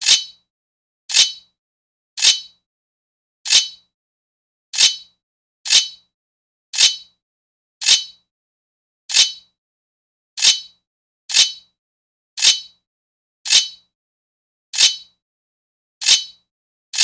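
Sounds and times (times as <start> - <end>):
sword blade scraping metal: 0.0 - 0.4, 1.1 - 1.5, 2.2 - 2.6, 3.5 - 3.8, 4.8 - 5.1, 5.7 - 6.0, 6.8 - 7.1, 7.8 - 8.2, 9.1 - 9.5, 10.4 - 11.7, 12.4 - 12.8, 13.5 - 13.8, 14.8 - 15.1, 16.0 - 16.4.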